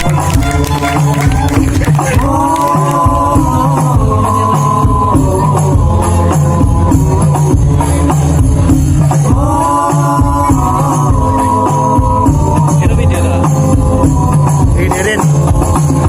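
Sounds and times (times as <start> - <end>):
frame drums beating: 0.0 - 5.5
voices singing: 0.0 - 7.9, 9.1 - 14.7.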